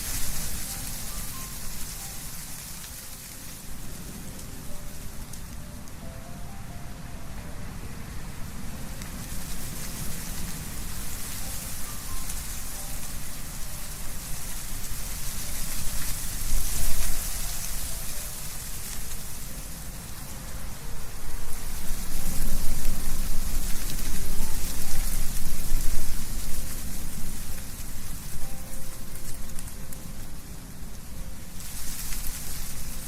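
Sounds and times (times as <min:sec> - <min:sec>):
wind with leaves rustling: 0:00.0 - 0:33.0.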